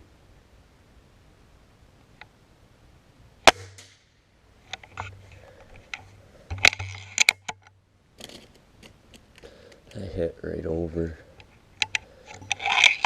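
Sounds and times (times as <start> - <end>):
air rifle shot: 3.5 - 4.0.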